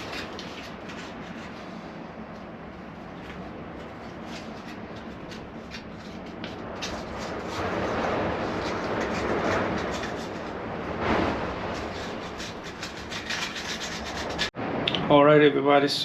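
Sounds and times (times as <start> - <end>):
rushing noise: 0.0 - 16.0
light scrapes: 3.9 - 14.5
sandpaper rubbing on metal: 11.7 - 14.5.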